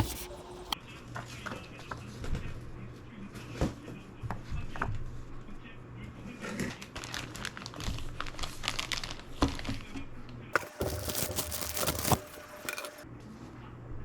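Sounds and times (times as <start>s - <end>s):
crinkling and rustling: 10.6s - 13.0s.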